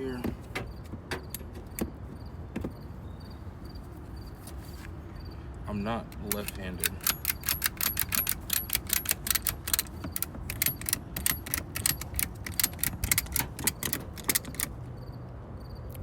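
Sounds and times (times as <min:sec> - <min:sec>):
ratchet strap clicking: 0:06.2 - 0:14.8.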